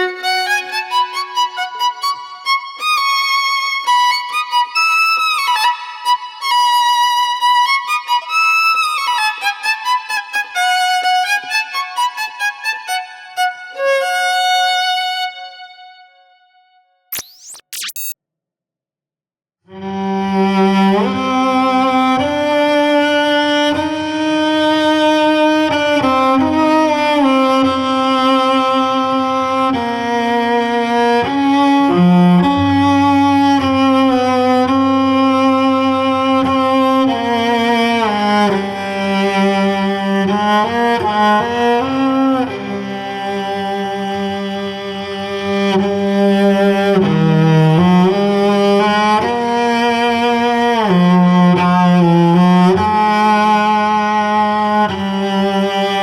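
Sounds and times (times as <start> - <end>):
bowed cello melody: 19.8 - 56.0.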